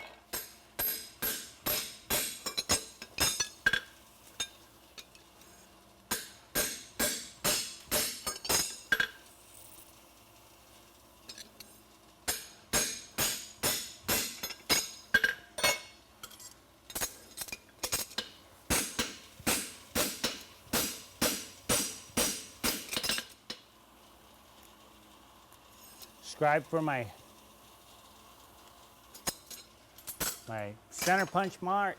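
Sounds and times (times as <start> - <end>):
hammer striking horseshoe on anvil: 0.3 - 3.5, 6.1 - 9.1, 12.3 - 15.9, 18.7 - 23.2.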